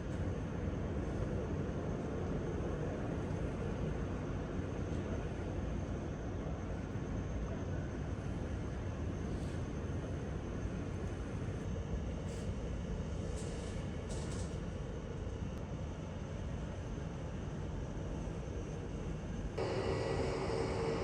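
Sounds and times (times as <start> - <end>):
moving vehicle rumble and hiss: 19.6 - 21.0.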